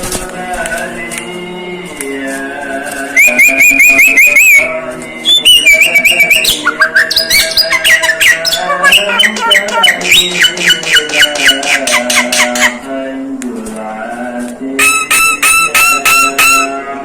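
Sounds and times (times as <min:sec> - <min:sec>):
myna whistled chirps: 0:05.3 - 0:12.6.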